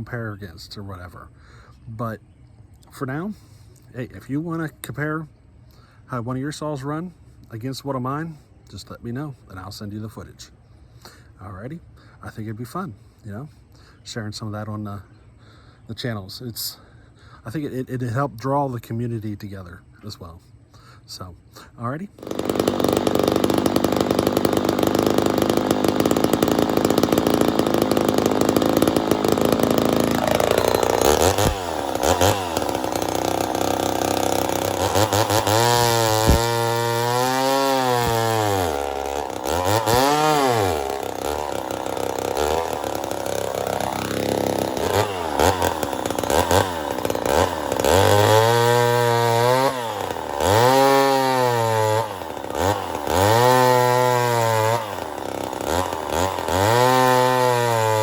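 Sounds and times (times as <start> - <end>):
chainsaw revving: 22.2 - 58.0.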